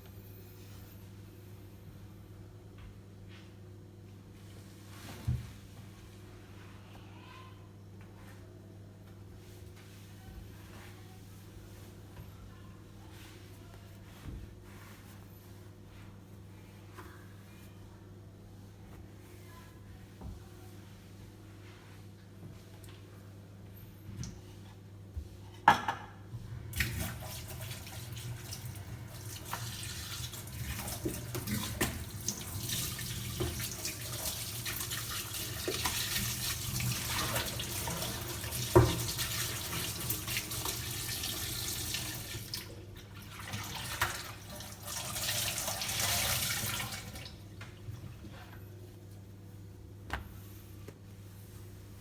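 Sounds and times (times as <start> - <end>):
dishes clinking and knocking: 25.6 - 26.2
tap water running into sink: 26.7 - 47.8.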